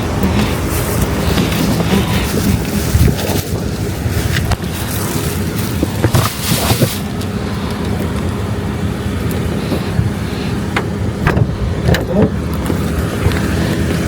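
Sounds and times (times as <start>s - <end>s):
car engine rumbling: 0.0s - 14.0s.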